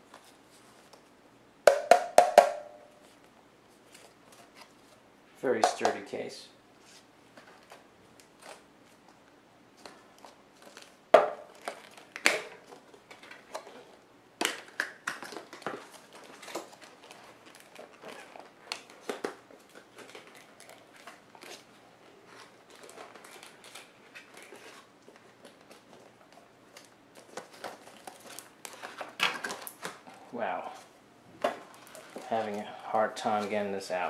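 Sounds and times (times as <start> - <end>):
plastic crinkling: 7.4 - 30.3, 31.6 - 33.6
plastic case cracking open: 26.7 - 30.1.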